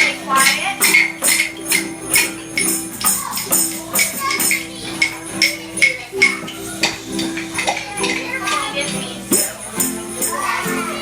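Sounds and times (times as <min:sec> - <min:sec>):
tambourine beat: 0:00.0 - 0:11.0
ukulele band playing: 0:00.0 - 0:11.0.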